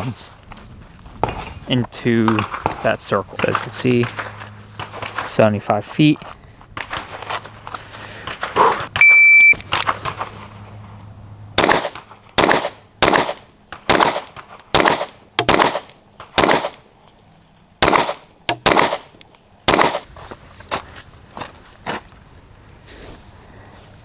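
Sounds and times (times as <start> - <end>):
pistol shots: 2.2 - 5.5, 11.6 - 16.8, 17.8 - 20.1
shot timer beep: 9.0 - 9.6.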